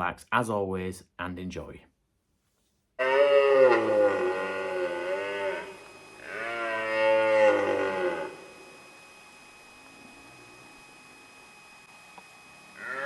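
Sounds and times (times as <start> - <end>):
deep wavering animal call: 3.0 - 9.0, 9.7 - 11.4, 12.7 - 13.0.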